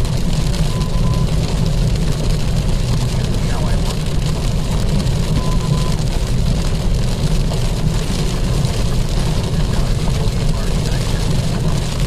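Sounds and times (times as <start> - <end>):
heavy rain hissing: 1.2 - 12.0.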